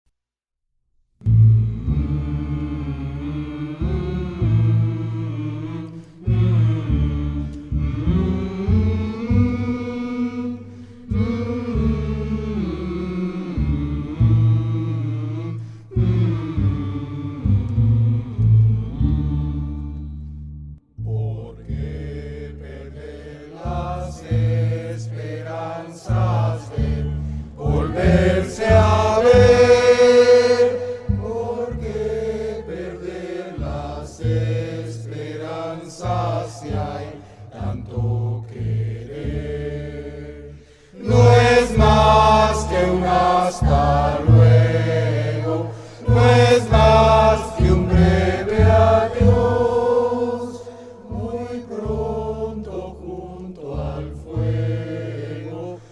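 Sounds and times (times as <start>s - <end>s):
steady bass line: 1.2s - 25.3s, 26.1s - 32.9s, 41.0s - 53.1s
group of voices singing: 1.7s - 20.3s, 21.0s - 55.9s.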